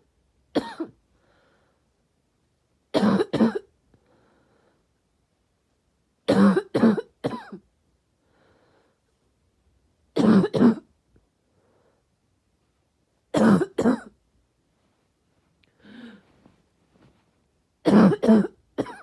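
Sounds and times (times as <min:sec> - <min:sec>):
person coughing harshly: 0:00.6 - 0:01.0, 0:03.0 - 0:03.7, 0:06.3 - 0:07.6, 0:10.2 - 0:10.9, 0:13.3 - 0:14.2, 0:17.8 - 0:19.0
faint breaths: 0:01.1 - 0:02.0, 0:03.9 - 0:05.0, 0:08.2 - 0:09.2, 0:11.4 - 0:12.2, 0:15.6 - 0:17.3.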